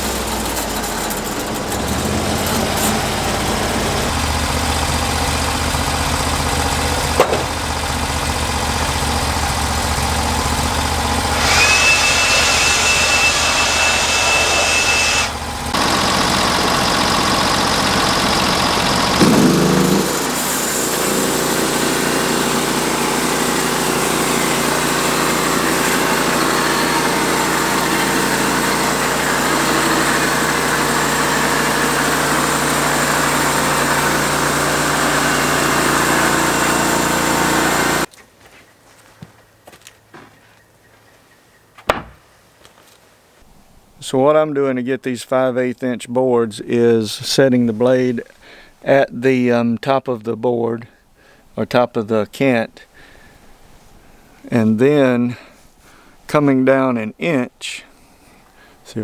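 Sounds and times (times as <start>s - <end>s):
sawmill engine running: 0.0s - 38.1s.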